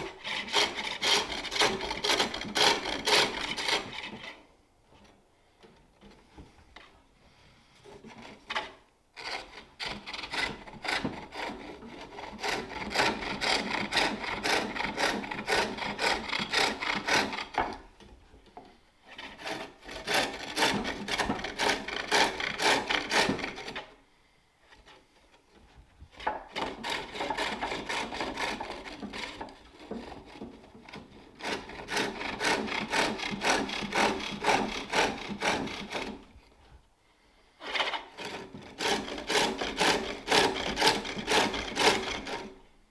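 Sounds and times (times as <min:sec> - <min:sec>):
lathe tool scraping wood: 0:00.0 - 0:04.4, 0:09.2 - 0:17.9, 0:19.0 - 0:23.9, 0:26.5 - 0:36.4, 0:37.6 - 0:42.6.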